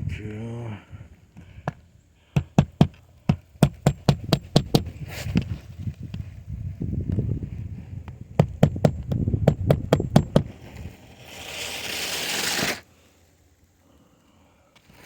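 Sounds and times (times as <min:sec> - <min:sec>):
low rumbling handling noise: 0:00.0 - 0:11.1
hammer blows on shingle: 0:01.4 - 0:05.5, 0:08.4 - 0:10.7
rising hiss: 0:10.8 - 0:13.3.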